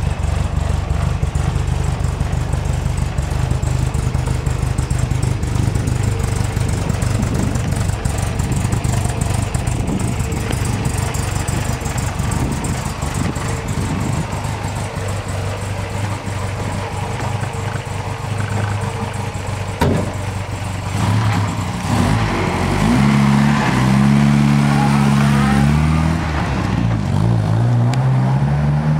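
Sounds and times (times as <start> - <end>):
car engine idling: 0.0 - 27.2.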